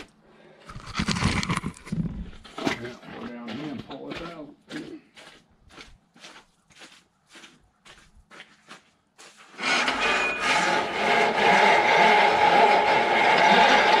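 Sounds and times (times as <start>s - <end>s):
loud steady machine running: 9.6s - 14.0s.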